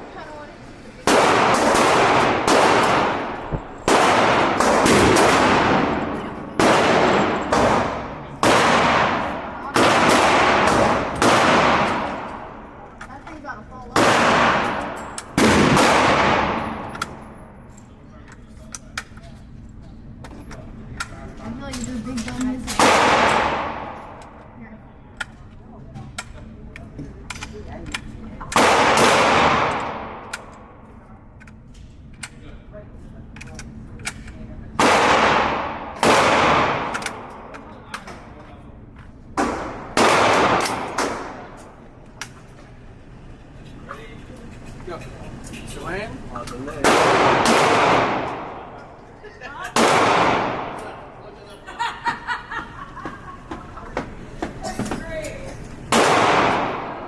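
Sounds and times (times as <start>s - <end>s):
echoing gunshots: 1.0s - 12.9s, 13.9s - 17.4s, 22.7s - 24.6s, 28.5s - 30.8s, 34.8s - 37.6s, 39.4s - 41.8s, 46.8s - 49.0s, 49.8s - 51.2s, 55.9s - 57.0s
faint distant gunshots: 14.0s - 16.9s, 46.8s - 48.8s.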